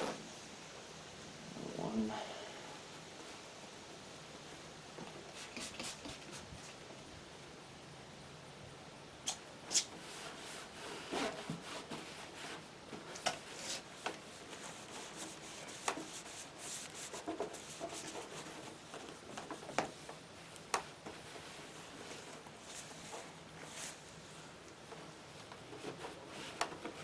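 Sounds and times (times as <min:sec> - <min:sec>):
paper towel scrubbing plastic: 0:09.3 - 0:27.0.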